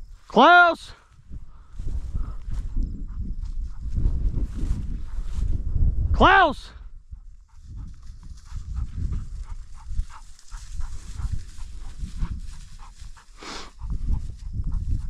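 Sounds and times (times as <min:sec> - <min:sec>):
dog panting and sniffing: 0:07.2 - 0:15.0
dog huffing: 0:08.5 - 0:14.2.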